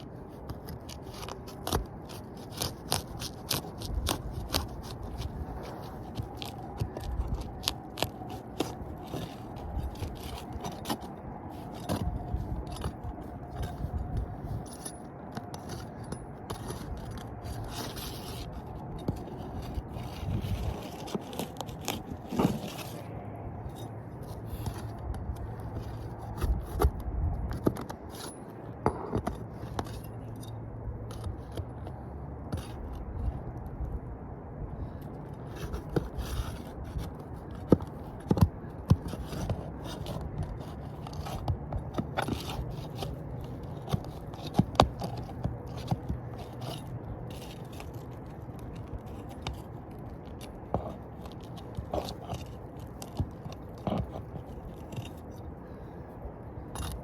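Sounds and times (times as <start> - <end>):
shingle scraping: 0.0 - 33.6, 34.8 - 57.0.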